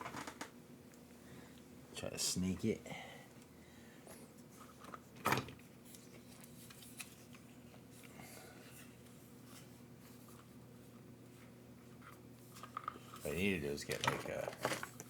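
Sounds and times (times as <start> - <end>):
steady low hum: 0.5 - 15.0
faint clicks and rustles: 4.1 - 15.0
handling small plastic parts: 12.5 - 15.0.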